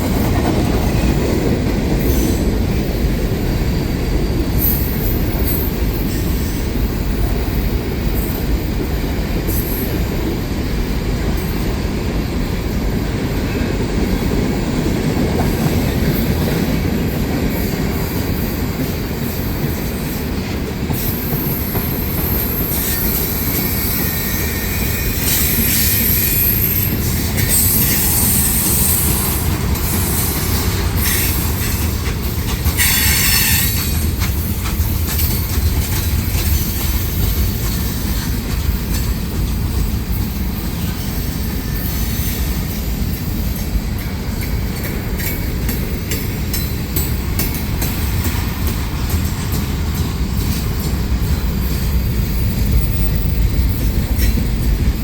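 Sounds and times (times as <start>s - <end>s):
train wheels rumbling on rail: 0.0s - 55.0s
high-pitched wheel squeal: 22.4s - 29.4s.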